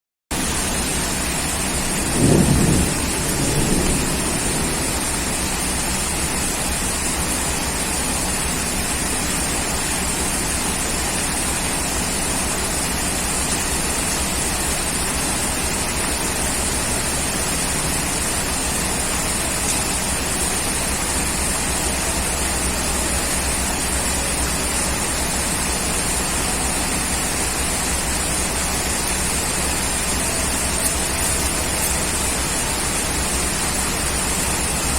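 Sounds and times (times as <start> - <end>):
heavy rain: 0.4 - 34.9
low roll of thunder: 1.7 - 7.1.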